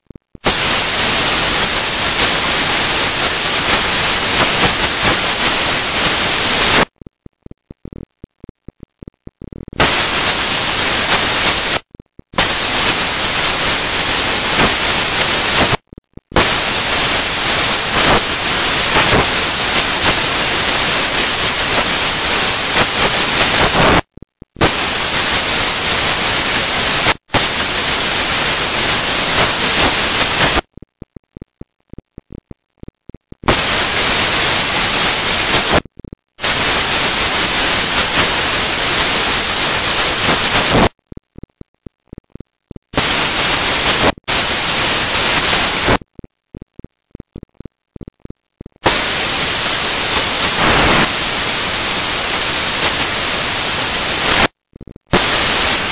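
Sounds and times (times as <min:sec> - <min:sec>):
static hiss: 0:00.0 - 0:55.9
faint rapid ticks: 0:06.9 - 0:09.8, 0:30.5 - 0:33.4, 0:40.5 - 0:43.0, 0:46.0 - 0:48.8.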